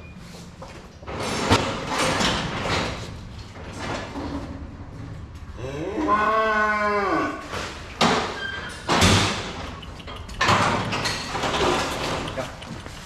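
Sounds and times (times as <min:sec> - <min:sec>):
cow mooing: 0:05.6 - 0:07.5.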